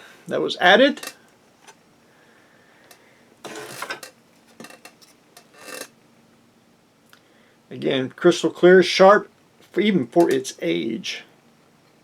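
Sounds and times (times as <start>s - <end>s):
plastic parts rattling: 3.5s - 5.9s.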